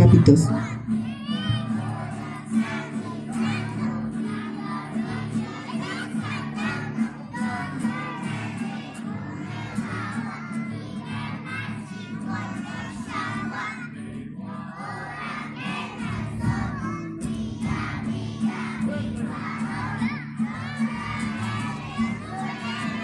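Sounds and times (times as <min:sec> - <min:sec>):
crowd noise: 0:00.0 - 0:23.0
young children singing: 0:00.0 - 0:23.0.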